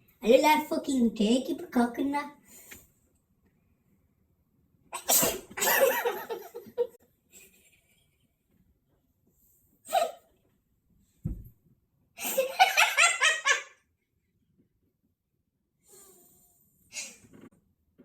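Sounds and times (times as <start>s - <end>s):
person laughing hard: 5.6s - 6.9s
low thump: 11.2s - 11.6s.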